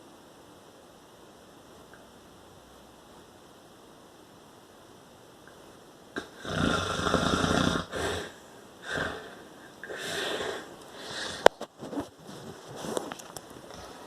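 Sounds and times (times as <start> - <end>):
person snoring: 6.2 - 11.5
wheezing breaths: 6.3 - 11.7.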